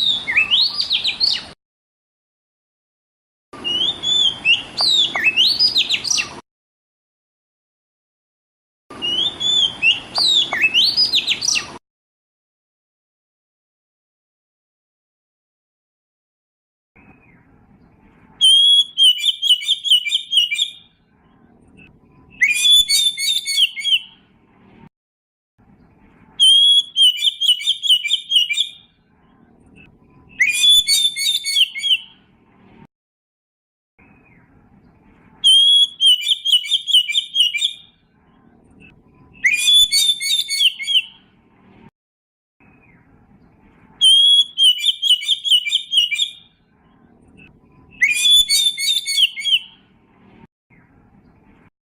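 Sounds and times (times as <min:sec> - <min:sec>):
bird singing high whistled notes: 0:00.0 - 0:01.6, 0:03.6 - 0:06.3, 0:09.0 - 0:11.7, 0:18.4 - 0:21.0, 0:22.3 - 0:24.2, 0:26.4 - 0:28.9, 0:30.2 - 0:32.2, 0:35.4 - 0:38.0, 0:39.4 - 0:41.2, 0:44.0 - 0:46.6, 0:47.9 - 0:49.8.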